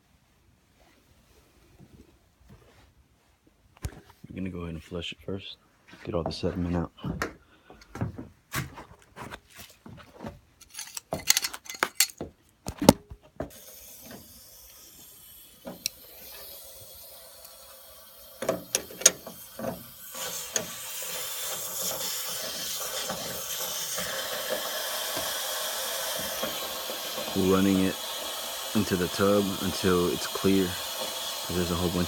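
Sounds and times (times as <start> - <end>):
sharp clicks and knocks: 10.6 - 14.2, 18.4 - 20.8
water rushing into bathtub: 20.1 - 32.0.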